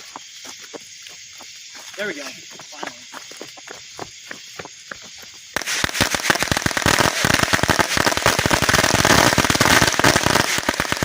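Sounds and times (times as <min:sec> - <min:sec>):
firecrackers banging: 0:04.7 - 0:11.0.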